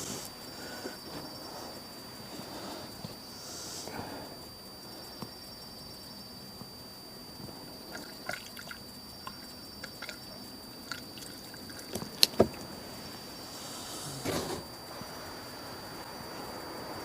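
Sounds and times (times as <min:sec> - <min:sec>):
gasoline dripping: 0:07.9 - 0:12.9.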